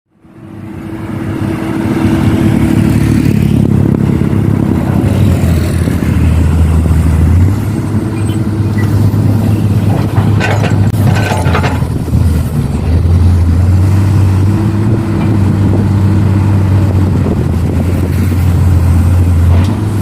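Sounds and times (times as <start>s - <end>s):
heavy diesel engine running: 0.1s - 20.0s
clattering: 9.8s - 12.0s.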